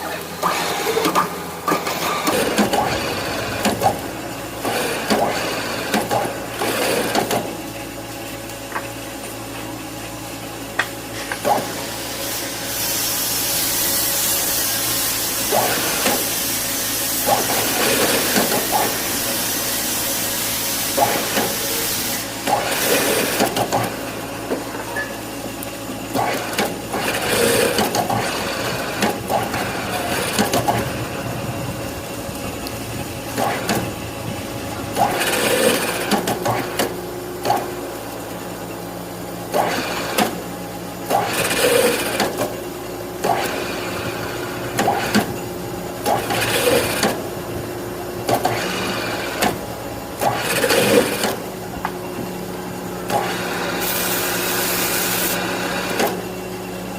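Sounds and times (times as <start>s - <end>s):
metal cutting bursts: 0.0s - 7.4s, 11.4s - 24.4s, 26.1s - 38.0s, 39.5s - 42.6s, 50.2s - 51.4s
machine hum: 0.0s - 56.9s
spindle whine: 28.2s - 37.8s.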